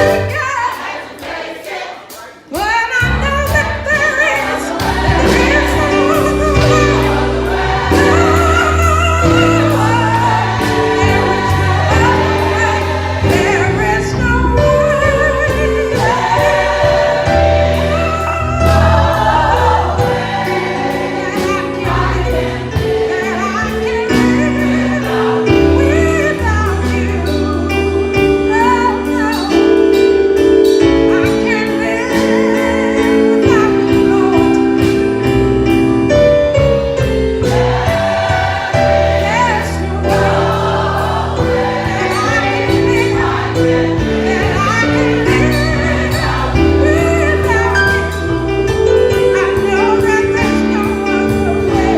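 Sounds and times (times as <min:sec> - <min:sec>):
bass accompaniment: 0:00.0 - 0:00.8, 0:02.5 - 0:51.9
choir singing gospel song: 0:00.0 - 0:51.9.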